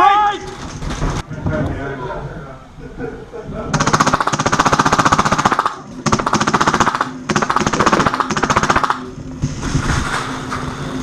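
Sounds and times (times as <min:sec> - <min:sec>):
airsoft machine gun firing bursts: 0:03.7 - 0:09.1.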